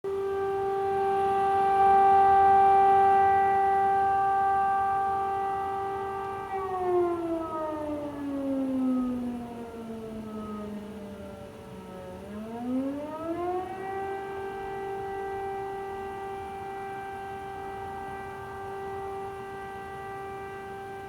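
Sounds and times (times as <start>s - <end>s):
air raid siren: 0.0s - 21.0s.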